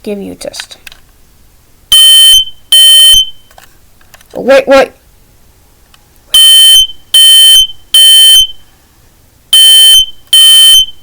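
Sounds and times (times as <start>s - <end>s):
smoke alarm beeping: 1.9s - 3.5s, 6.4s - 8.6s, 9.5s - 11.0s.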